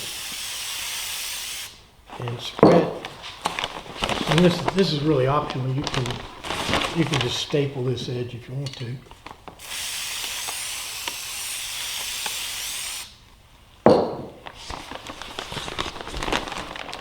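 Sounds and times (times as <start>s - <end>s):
aerosol can spraying: 0.0s - 1.8s, 9.6s - 13.2s
paper rustling and crinkling: 2.1s - 9.6s, 14.4s - 17.0s
loud knock: 13.9s - 14.4s.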